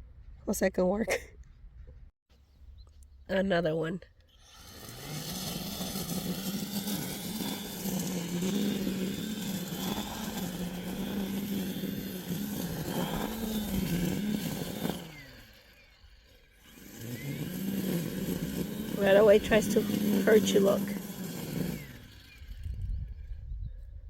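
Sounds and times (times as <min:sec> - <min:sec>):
small gasoline engine revving: 0:04.3 - 0:23.6.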